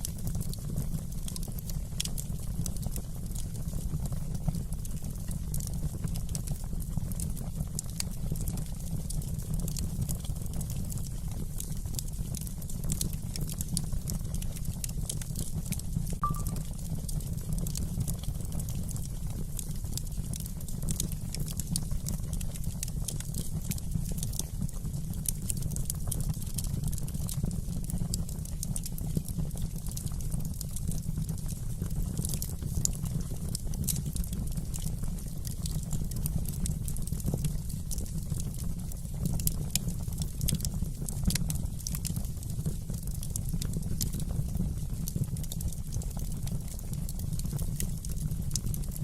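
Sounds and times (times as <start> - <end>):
fire crackling and popping: 0.0 - 49.0
low rumble of flames: 0.0 - 49.0.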